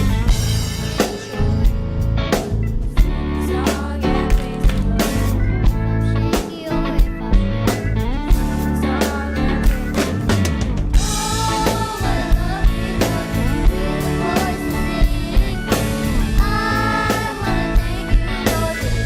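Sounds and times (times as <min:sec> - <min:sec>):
band with drum-kit beat: 0:00.0 - 0:19.0
children's choir singing: 0:11.0 - 0:19.0.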